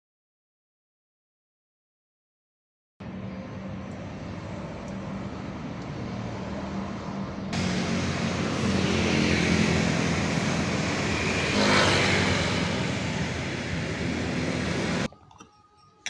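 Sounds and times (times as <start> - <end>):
vehicle engine running: 7.1 - 15.1
loud rushing noise: 7.5 - 15.1.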